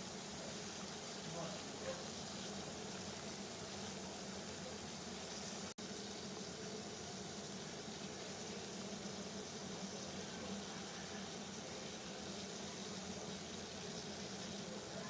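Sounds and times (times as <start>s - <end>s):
water boiling: 0.0s - 15.0s.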